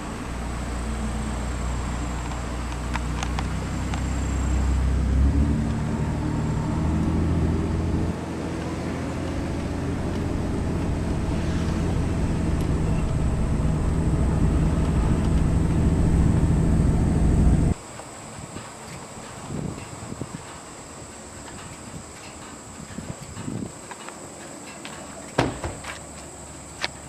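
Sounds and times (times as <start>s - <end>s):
vehicle engine under load: 0.0s - 17.8s.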